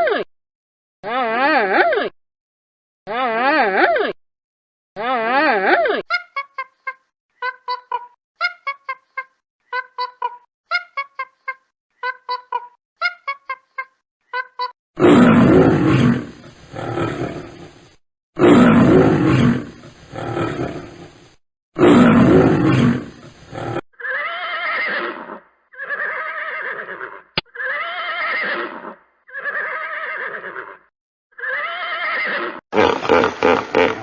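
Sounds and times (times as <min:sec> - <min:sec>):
lion roaring: 0:15.0 - 0:21.2, 0:21.8 - 0:23.8
horse whinnying: 0:24.0 - 0:30.8, 0:31.4 - 0:34.0.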